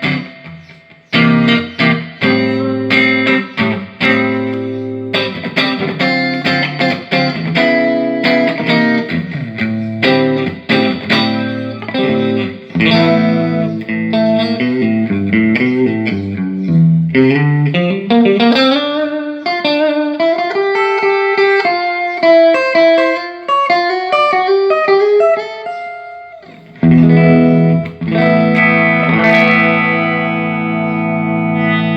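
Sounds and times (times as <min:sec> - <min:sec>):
electric guitar through amp: 0:00.0 - 0:31.9.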